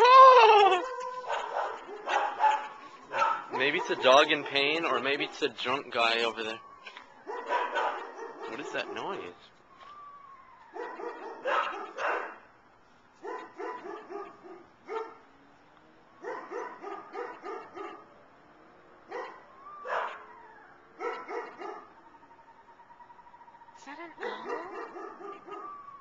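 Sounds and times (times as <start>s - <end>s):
animal yelping cries: 0.0s - 4.2s.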